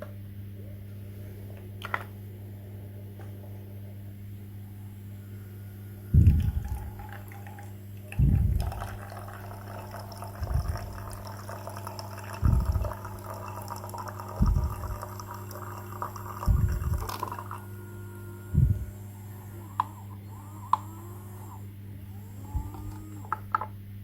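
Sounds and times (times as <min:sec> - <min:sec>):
toy washing machine motor hum: 0:01.4 - 0:02.2, 0:04.6 - 0:23.7
drum thudding: 0:08.2 - 0:08.8, 0:10.4 - 0:11.0, 0:12.4 - 0:13.1, 0:14.4 - 0:15.0, 0:16.4 - 0:17.2, 0:18.6 - 0:19.0.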